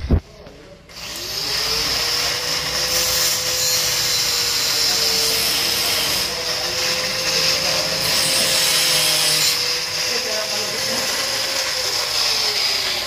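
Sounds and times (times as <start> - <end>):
power tool motor whine: 0.9 - 13.0.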